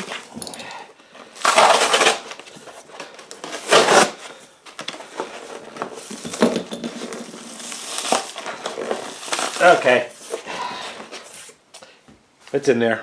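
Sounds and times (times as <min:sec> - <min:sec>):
foam packing rustling: 0:00.0 - 0:00.4, 0:01.0 - 0:11.6
foam packing crunching rips: 0:01.2 - 0:11.3.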